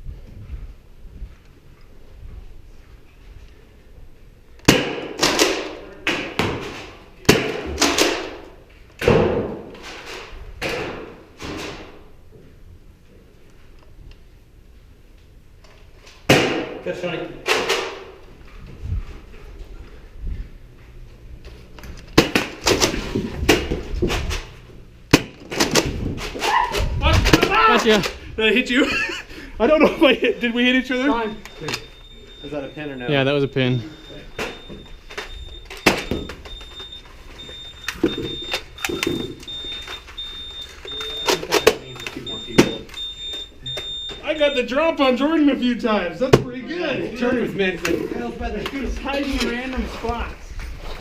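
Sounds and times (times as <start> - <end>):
foam balls striking surfaces: 16.3 - 16.8.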